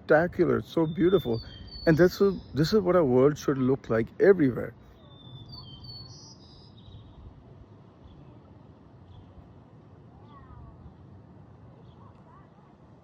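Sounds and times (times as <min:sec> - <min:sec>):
low steady rumble: 0:00.0 - 0:05.5
faint bird chirps: 0:00.7 - 0:03.1, 0:04.8 - 0:07.4.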